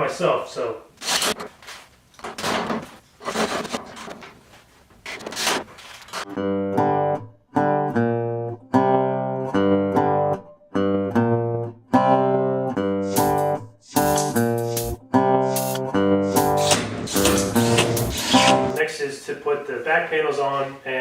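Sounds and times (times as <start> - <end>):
acoustic guitar strumming chords: 6.3 - 18.9.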